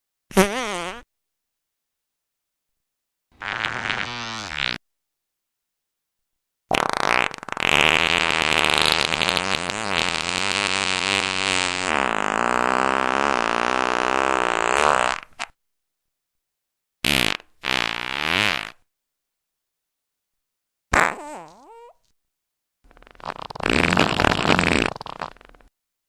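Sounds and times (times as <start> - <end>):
buzzy fart sound: 0.3 - 1.1, 3.4 - 4.8, 6.7 - 15.6, 17.0 - 18.9, 20.9 - 22.0, 22.9 - 25.8
short farts: 0.3 - 1.1, 3.4 - 4.8, 6.7 - 15.6, 17.0 - 18.9, 20.9 - 22.0, 22.9 - 25.7.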